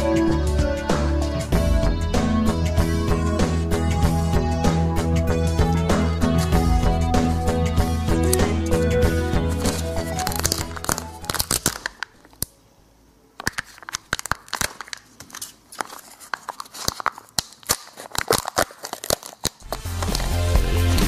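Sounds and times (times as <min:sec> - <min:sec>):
background music: 0:00.0 - 0:11.7, 0:19.6 - 0:21.0
wrapper crinkling and tearing: 0:09.5 - 0:12.5, 0:13.4 - 0:20.5.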